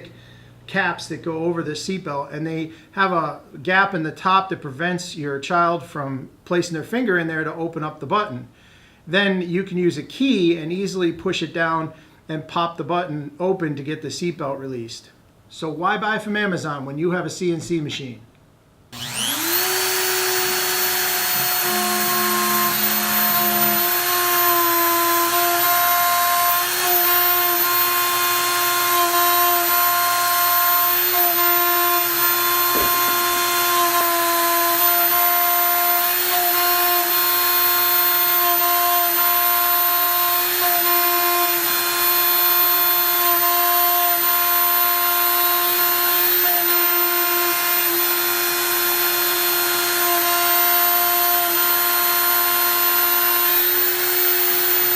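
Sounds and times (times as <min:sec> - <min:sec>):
router spindle whining: 0:19.0 - 0:54.9.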